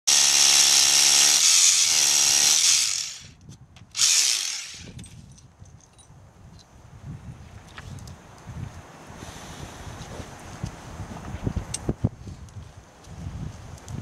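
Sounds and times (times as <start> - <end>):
rotary hammer drill boring into stone: 0.1 - 3.4, 4.0 - 5.1.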